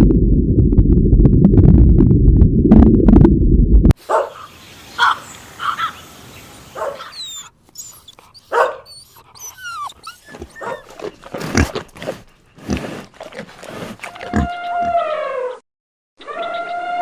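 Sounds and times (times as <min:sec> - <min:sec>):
puppy whimpering and yelping: 0:06.8 - 0:11.9.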